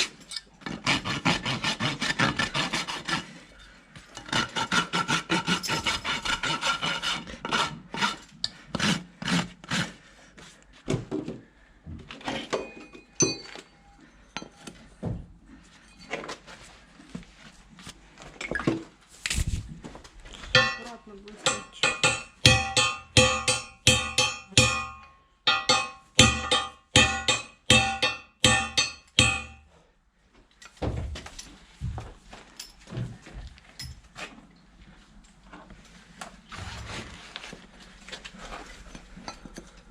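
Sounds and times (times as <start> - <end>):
hoof rasp scraping hoof: 0.0 - 10.6, 36.5 - 39.5.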